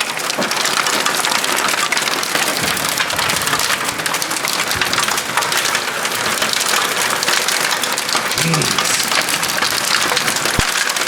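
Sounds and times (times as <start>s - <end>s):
hailstones pelting down: 0.0s - 11.0s.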